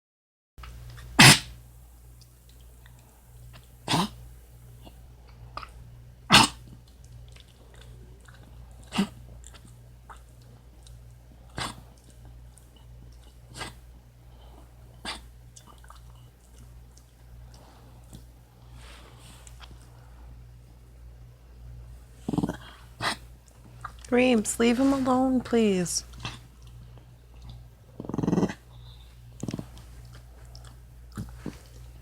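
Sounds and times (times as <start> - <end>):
dog coughing: 1.2 - 1.6, 3.9 - 4.2, 6.3 - 6.7, 8.9 - 9.2, 11.5 - 11.9, 13.5 - 13.8, 15.0 - 15.3, 22.4 - 23.2.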